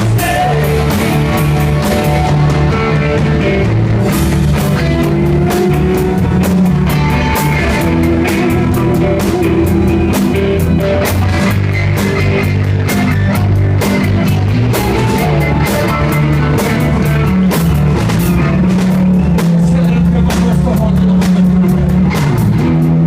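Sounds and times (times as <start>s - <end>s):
live rock band playing: 0.0s - 23.0s.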